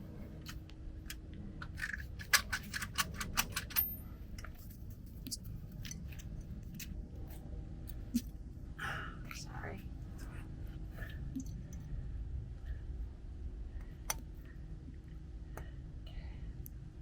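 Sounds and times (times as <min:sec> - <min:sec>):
metal tools clinking: 0:01.8 - 0:04.0.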